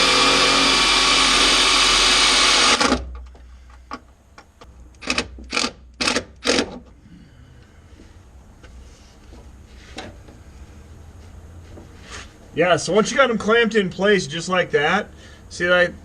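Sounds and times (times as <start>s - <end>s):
power drill running: 0.0s - 3.1s.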